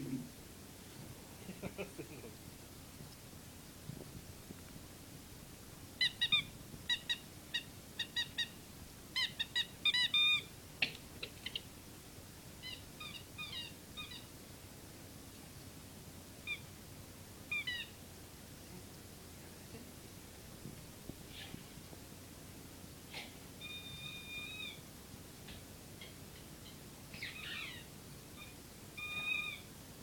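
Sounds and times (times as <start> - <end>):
squeaky toy squeaking: 9.2 - 10.4, 23.6 - 24.8, 28.4 - 29.6.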